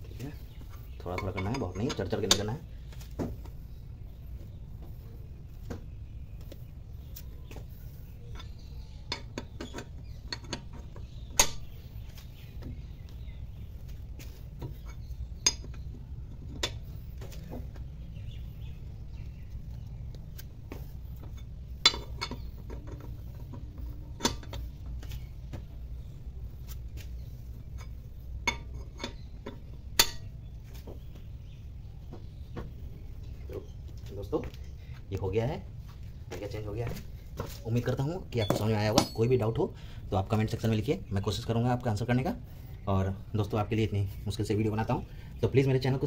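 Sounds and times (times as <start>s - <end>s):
low steady hum: 0.0s - 46.0s
wrench clinking on lug nuts: 1.1s - 2.6s, 8.3s - 11.8s, 21.2s - 24.7s, 38.4s - 39.5s.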